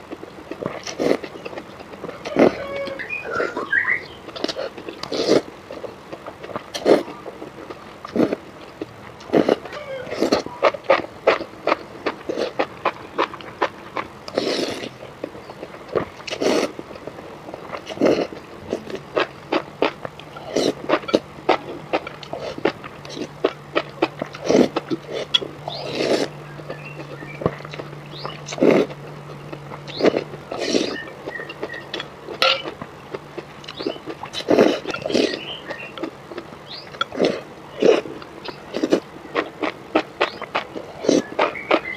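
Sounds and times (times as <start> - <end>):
wet chewing: 0.0 - 41.9
slurping noodles: 0.6 - 1.3, 4.4 - 7.1, 9.2 - 13.7, 14.3 - 15.0, 15.9 - 16.8, 17.6 - 26.4, 28.5 - 29.0, 29.9 - 32.0, 33.7 - 36.1, 37.0 - 38.1, 38.7 - 41.9
noodle slurps: 4.4 - 5.5, 14.3 - 14.9, 16.2 - 16.8, 17.7 - 21.6, 24.3 - 26.4, 29.9 - 31.8, 33.7 - 36.1.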